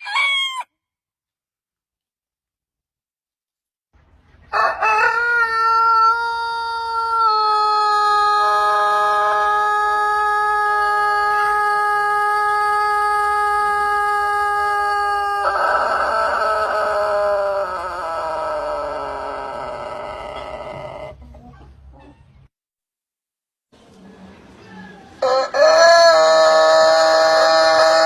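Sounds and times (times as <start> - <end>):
rooster crowing: 0.0 - 0.7, 4.5 - 21.2, 24.6 - 28.0.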